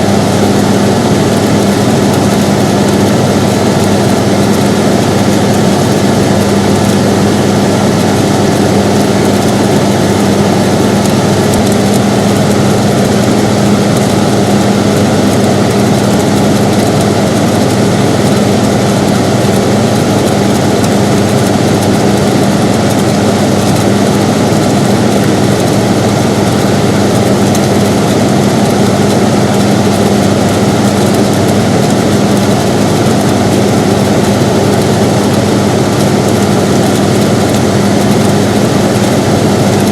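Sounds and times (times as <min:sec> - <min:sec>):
air conditioner running: 0:00.0 - 0:39.9.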